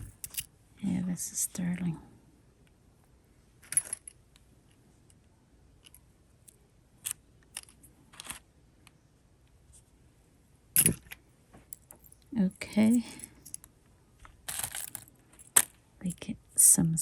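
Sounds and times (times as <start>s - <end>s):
jewelry clicking and clinking: 0.0s - 0.5s, 3.6s - 4.2s, 10.8s - 13.7s, 14.4s - 15.8s.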